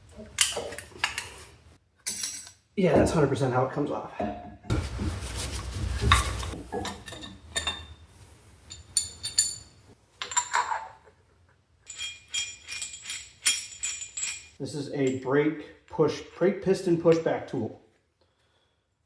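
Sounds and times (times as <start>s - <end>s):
metal tool parts clattering: 2.1s - 2.6s, 8.7s - 10.9s, 11.9s - 15.2s
sharp metallic clinks: 11.9s - 15.3s.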